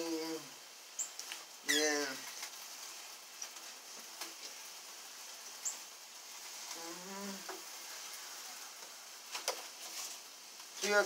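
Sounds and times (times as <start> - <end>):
food sizzling on grill: 0.0 - 11.0
person humming: 6.7 - 7.6.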